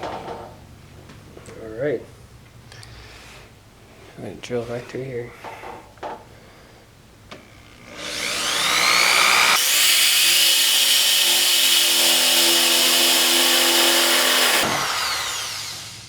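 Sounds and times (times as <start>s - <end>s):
power drill whining: 7.4s - 16.0s.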